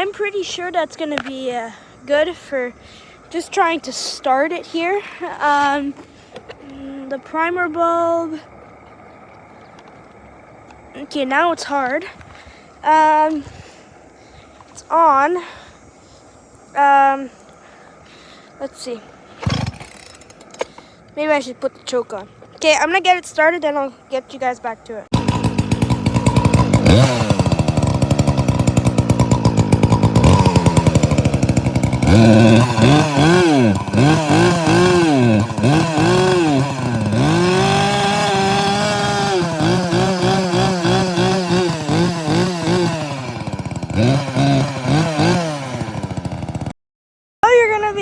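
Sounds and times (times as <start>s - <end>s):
chainsaw revving: 8.3s - 10.9s, 19.4s - 20.8s, 25.1s - 46.7s.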